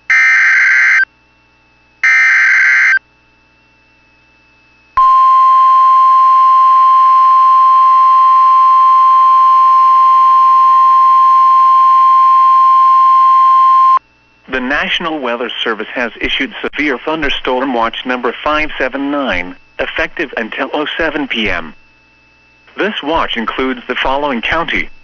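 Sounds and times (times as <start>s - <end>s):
steady warning alarm tone: 0.1s - 1.1s, 2.0s - 3.0s, 5.0s - 14.0s.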